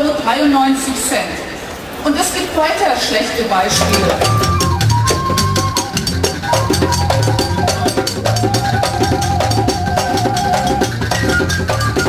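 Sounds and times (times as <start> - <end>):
bass line: 3.7 - 11.9
drum kit beat: 3.7 - 12.0
melody instrument holding long notes: 3.7 - 12.0.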